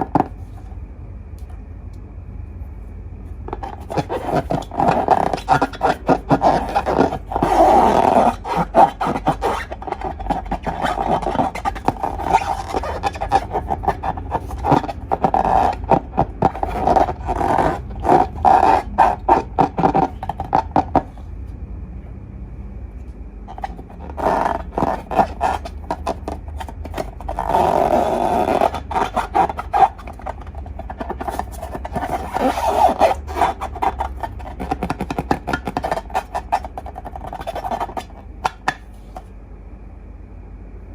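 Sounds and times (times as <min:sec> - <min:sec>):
slime and balloons crackling: 0:03.6 - 0:21.1.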